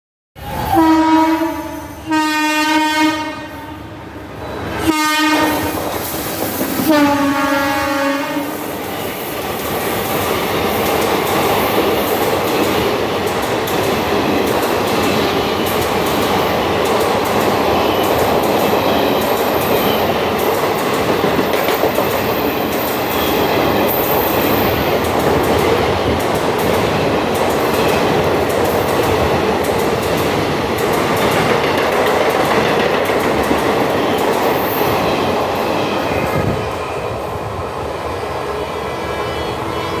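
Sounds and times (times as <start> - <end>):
train rumbling past: 0.4 - 40.0
locomotive horn blasts: 0.7 - 4.0, 4.8 - 5.7, 6.9 - 8.6
train wheels clickety-clack: 4.6 - 38.0.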